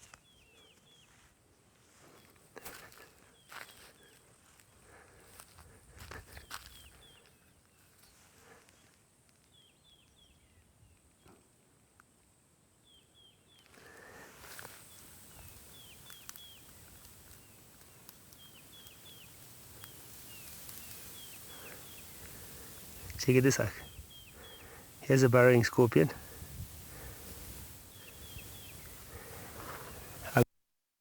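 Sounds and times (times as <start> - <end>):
footsteps: 1.9 - 6.9
soft hiss: 12.9 - 30.4
rustling: 13.7 - 30.4.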